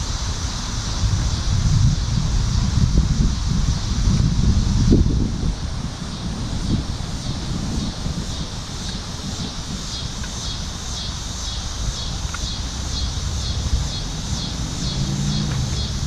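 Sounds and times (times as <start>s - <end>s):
wind rumbling on microphone: 0.0s - 16.0s
high-pitched pulsing: 11.5s - 16.0s.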